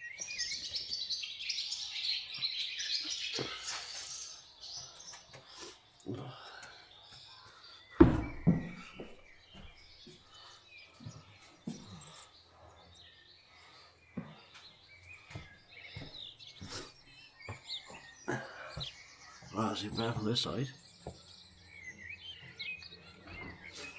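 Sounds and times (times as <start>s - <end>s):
birds chirping: 0.0s - 23.9s
knocks and thumps: 8.0s - 9.8s.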